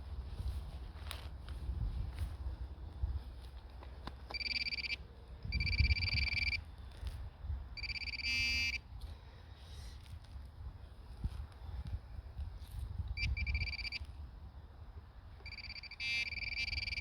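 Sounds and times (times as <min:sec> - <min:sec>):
rustling and handling noise: 0:00.0 - 0:04.9
metal detector buzzing: 0:04.3 - 0:06.6, 0:07.8 - 0:08.8, 0:13.2 - 0:14.1, 0:15.4 - 0:17.0.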